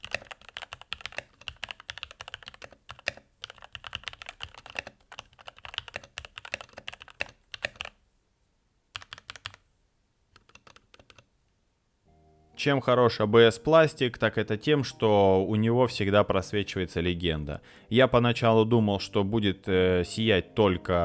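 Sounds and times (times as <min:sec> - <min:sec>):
mechanical keyboard typing: 0:00.0 - 0:08.0, 0:08.9 - 0:09.6, 0:10.4 - 0:11.3.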